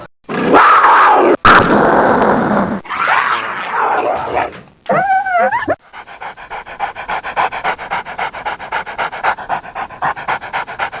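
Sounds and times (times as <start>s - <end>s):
dog whining: 4.9s - 11.0s
dog panting rapidly: 5.8s - 11.0s.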